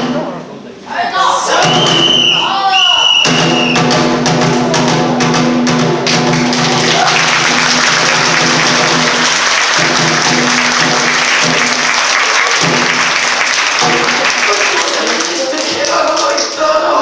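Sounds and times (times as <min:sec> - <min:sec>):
audience applauding: 0:06.0 - 0:16.7.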